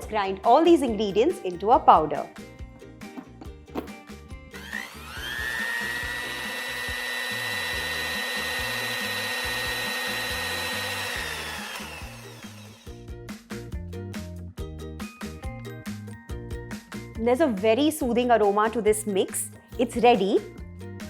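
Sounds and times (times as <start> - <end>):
electric spice grinder whirring: 4.5 - 13.1.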